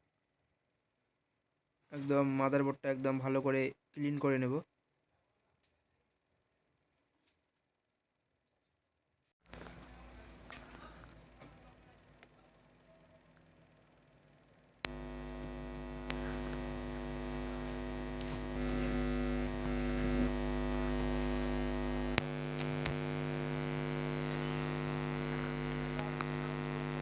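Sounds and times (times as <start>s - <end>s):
electrical mains hum: 9.5s - 27.0s
sharp clicks: 21.0s - 24.5s.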